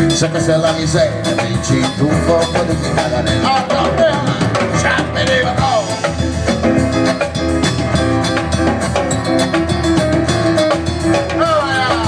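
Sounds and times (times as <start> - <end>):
drum kit beat: 0.0 - 12.0
live band playing: 0.0 - 12.0.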